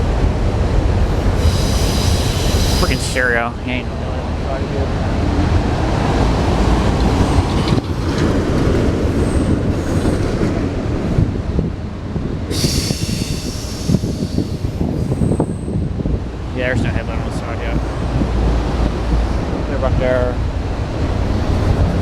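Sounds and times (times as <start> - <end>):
train wheels rumbling on rails: 0.0 - 22.0
wheels clattering over rail joints: 4.9 - 11.3.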